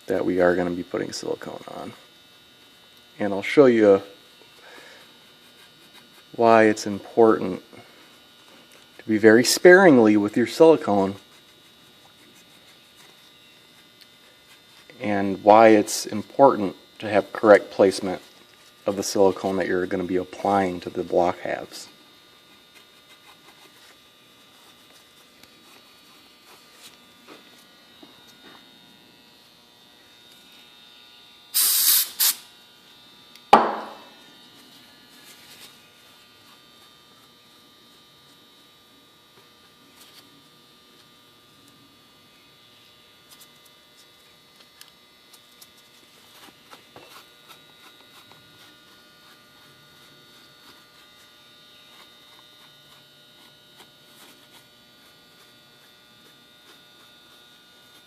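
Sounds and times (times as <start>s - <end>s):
electrical hum: 0.0s - 58.0s
short loud hisses: 31.6s - 32.4s.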